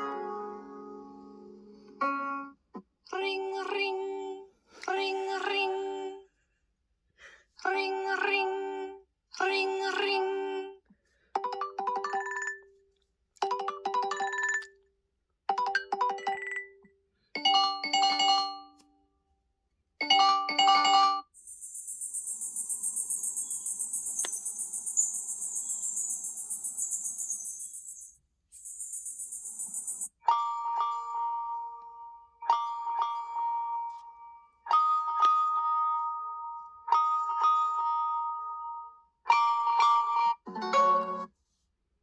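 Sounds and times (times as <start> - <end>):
bell-like ringtone melody: 11.4 - 12.7, 13.4 - 14.7, 20.1 - 31.1
high rapidly pulsing ring: 21.3 - 30.1.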